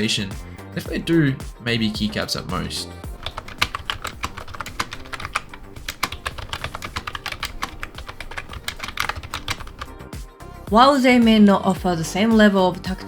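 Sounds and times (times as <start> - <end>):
membrane keyboard typing: 3.2 - 10.0.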